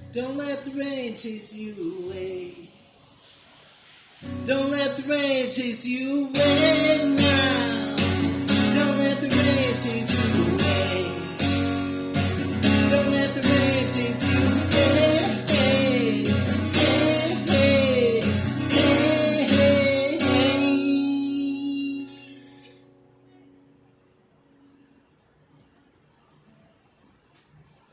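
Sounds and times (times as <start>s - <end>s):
acoustic guitar strumming: 4.2s - 23.3s
person singing wordless melody: 4.4s - 22.8s.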